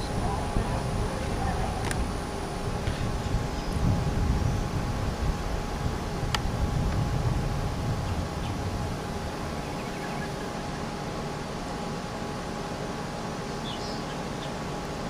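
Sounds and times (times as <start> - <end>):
wind rumbling on microphone: 0.0 - 11.3
outdoor background noise: 0.0 - 15.0.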